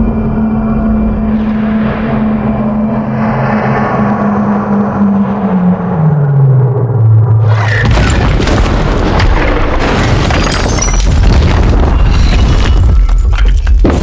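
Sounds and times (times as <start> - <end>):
film score with sliding low tone: 0.0 - 14.0
crackling debris: 7.4 - 14.0
large explosion: 7.4 - 14.0.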